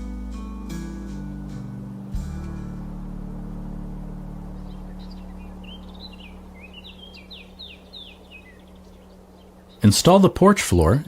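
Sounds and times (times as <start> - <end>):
songbird chirping: 0.0 - 11.0
steady low hum: 0.0 - 11.0.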